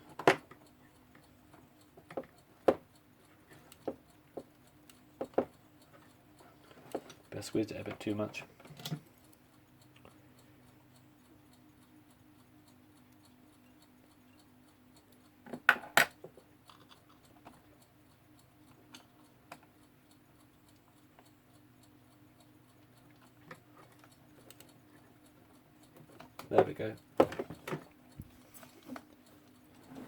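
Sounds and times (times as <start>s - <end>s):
alarm clock ticking: 0.0s - 30.0s.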